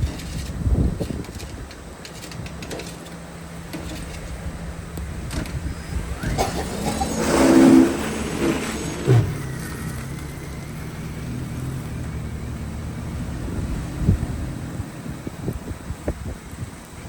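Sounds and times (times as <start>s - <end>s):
low engine hum: 0.0s - 17.0s
motor vehicle passing loudly: 4.8s - 16.0s.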